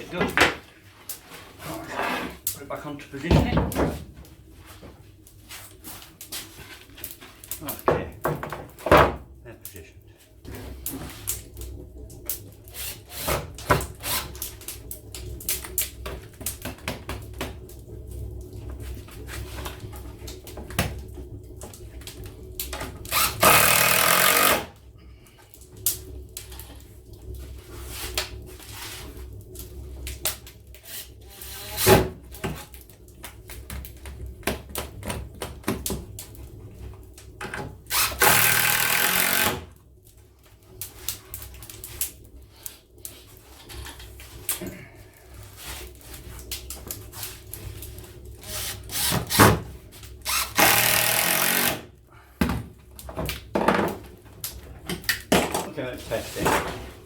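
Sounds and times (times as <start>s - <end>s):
power tool bursts: 23.1s - 24.7s, 37.9s - 39.6s, 50.3s - 51.9s.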